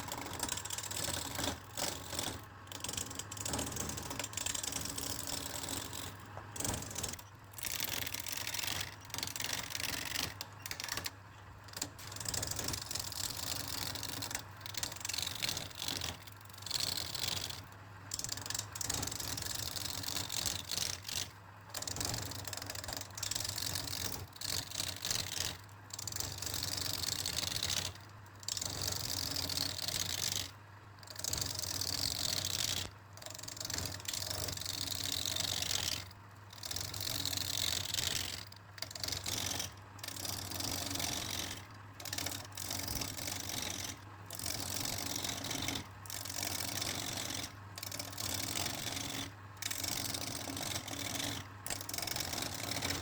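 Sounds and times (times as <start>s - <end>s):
tool scraping spinning wood: 0.0s - 11.2s, 31.1s - 53.0s.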